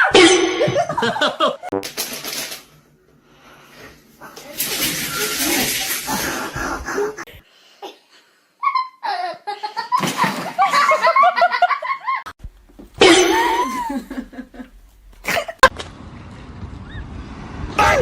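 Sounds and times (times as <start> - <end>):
people laughing heartily: 0.8 - 1.7, 6.2 - 7.4, 9.0 - 12.3, 13.4 - 15.7.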